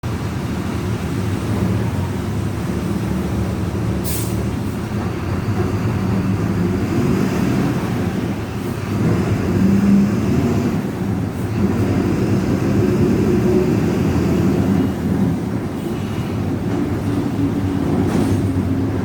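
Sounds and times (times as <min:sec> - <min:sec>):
bus differential growling: 0:00.0 - 0:19.0
compressed air hiss: 0:04.0 - 0:04.5.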